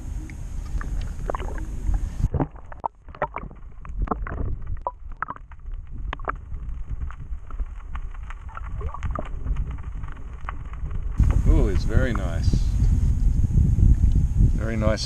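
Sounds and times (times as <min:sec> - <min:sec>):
low rumble: 0:00.0 - 0:15.0
water splashing and lapping: 0:00.6 - 0:06.4.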